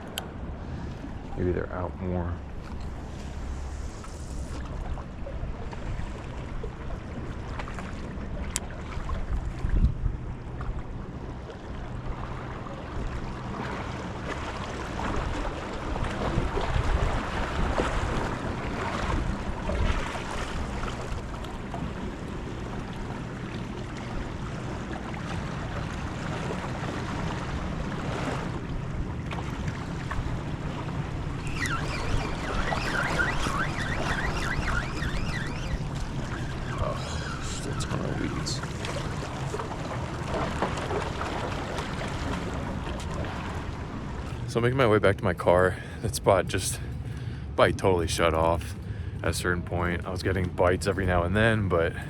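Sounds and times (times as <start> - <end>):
waves washing on shore: 0.0 - 52.0
wind gusting on microphone: 9.0 - 10.5, 13.0 - 23.5, 24.1 - 44.6.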